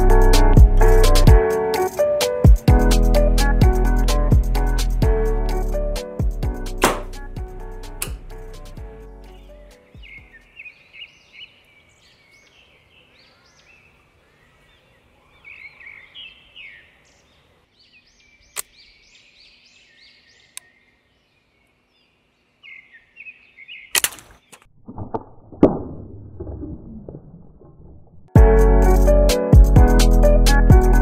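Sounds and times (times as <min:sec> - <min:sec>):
loud sharp snap: 0:06.8 - 0:07.2, 0:23.9 - 0:24.6
sharp single clicks: 0:06.8 - 0:07.2, 0:18.5 - 0:18.8, 0:23.9 - 0:24.7
small birds chirping: 0:08.9 - 0:24.7.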